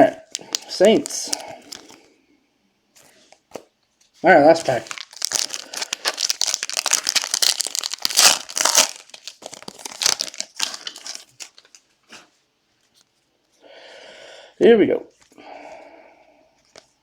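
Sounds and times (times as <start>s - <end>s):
foil wrapper tearing and crinkling: 0.3s - 2.0s, 4.5s - 11.8s.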